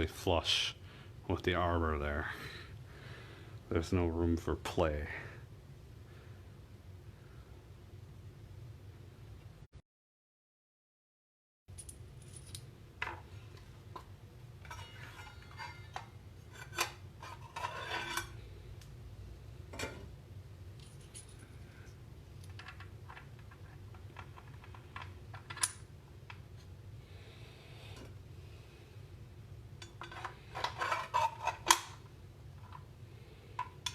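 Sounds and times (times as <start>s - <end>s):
low steady hum: 0.0s - 9.7s, 11.7s - 33.9s
small metallic clicks and clinks: 11.8s - 12.7s.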